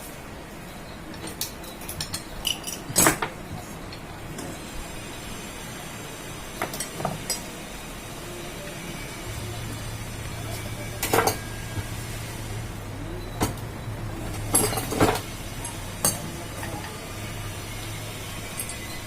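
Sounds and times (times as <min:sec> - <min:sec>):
metal tools clinking and knocking: 0:01.1 - 0:04.5, 0:11.0 - 0:11.6, 0:14.3 - 0:17.0.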